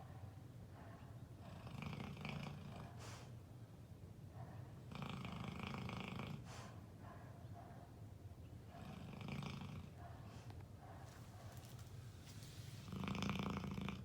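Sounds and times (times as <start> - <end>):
soft breaths: 6.4 - 7.0, 10.0 - 13.3.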